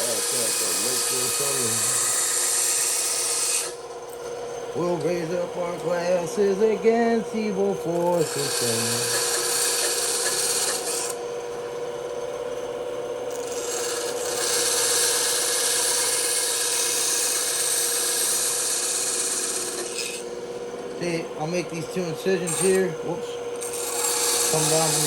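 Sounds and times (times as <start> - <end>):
saw blade cutting wood: 0.0 - 12.2, 13.2 - 25.0
bandsaw motor humming: 0.0 - 25.0.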